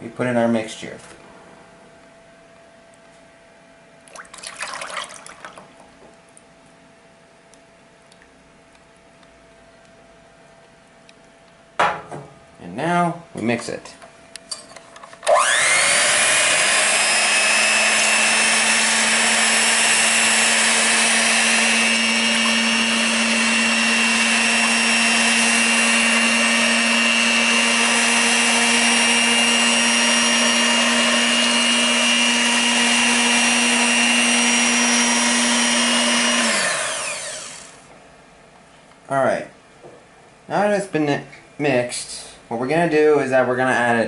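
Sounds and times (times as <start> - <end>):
electric mixer motor running: 15.3 - 37.9.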